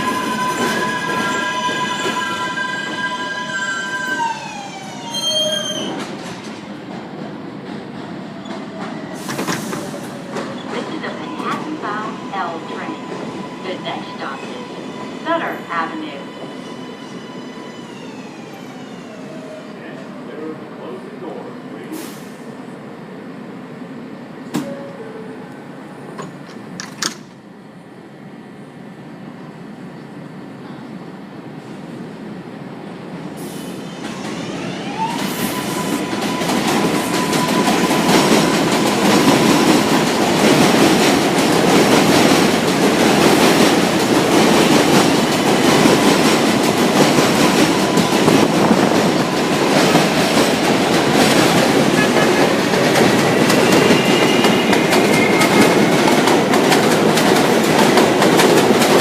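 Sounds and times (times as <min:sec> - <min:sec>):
subway train humming: 0:00.0 - 0:59.0
train rumble: 0:32.8 - 0:59.0.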